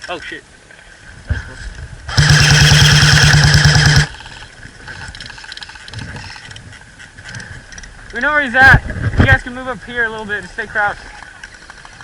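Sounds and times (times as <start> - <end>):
airsoft gun firing full-auto burst: 2.1 - 4.3.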